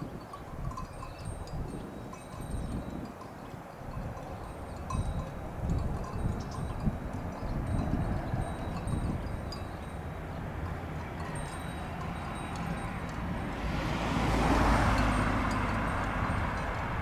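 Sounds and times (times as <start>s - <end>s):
wind rumble on microphone: 0.0s - 17.0s
propeller aircraft passing: 9.8s - 17.0s.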